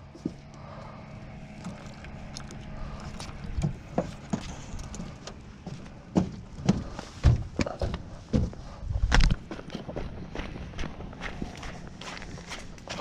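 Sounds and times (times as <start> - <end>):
footsteps scuffing and knocking: 3.5 - 13.0.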